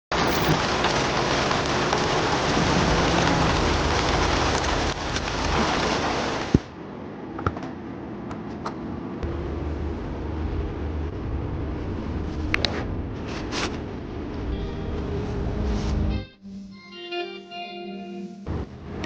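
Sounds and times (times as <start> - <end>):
steady rain falling: 0.1 - 6.9, 9.2 - 16.2, 18.5 - 19.0.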